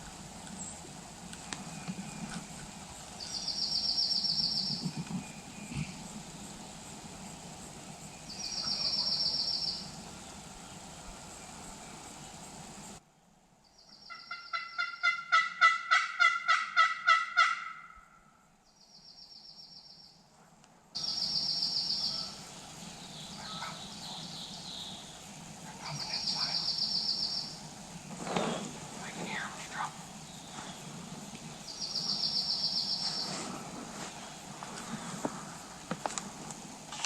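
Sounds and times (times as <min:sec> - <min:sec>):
large bird calling: 0:01.6 - 0:06.4, 0:08.2 - 0:11.2, 0:21.0 - 0:33.5.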